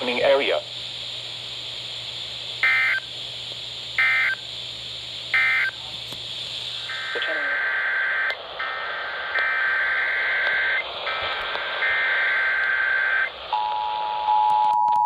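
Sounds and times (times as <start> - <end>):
buzzy digital data tones: 0.0 - 3.2, 3.8 - 5.9, 6.6 - 14.4
radio hiss: 0.0 - 14.4.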